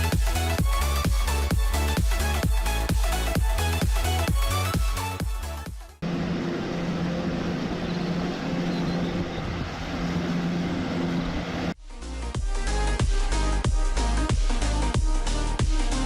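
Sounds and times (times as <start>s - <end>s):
electronic music: 0.0s - 6.0s, 11.8s - 16.0s
motor humming and whirring: 6.0s - 11.8s.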